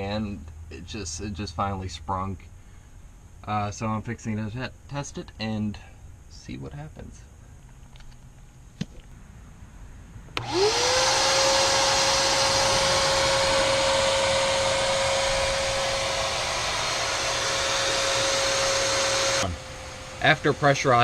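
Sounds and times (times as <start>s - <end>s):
shop vac motor whine: 10.4s - 21.0s.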